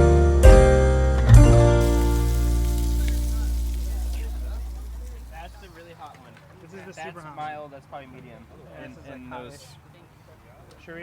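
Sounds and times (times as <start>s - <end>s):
acoustic guitar strumming chords: 0.0s - 5.7s.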